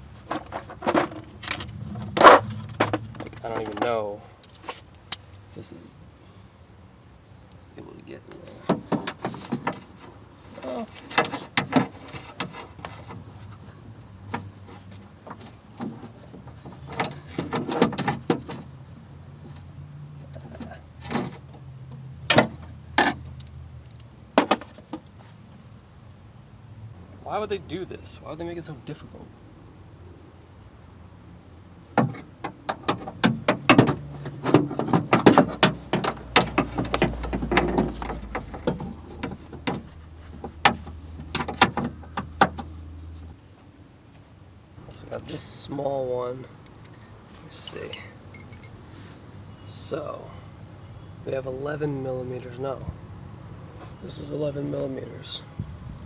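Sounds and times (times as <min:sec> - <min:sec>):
low steady hum: 0:46.3 - 0:48.8
metal tools clinking: 0:46.5 - 0:48.8.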